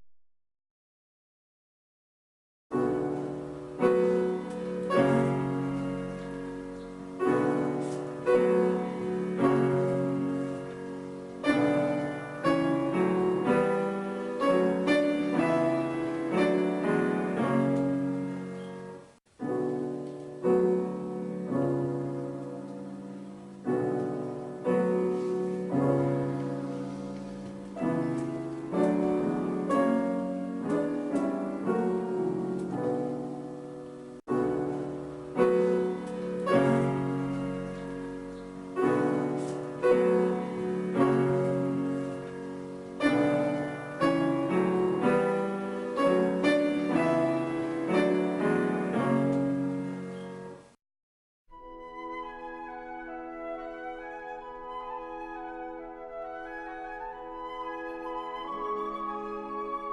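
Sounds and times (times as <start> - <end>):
solo piano music: 2.7 - 50.8, 51.5 - 59.9.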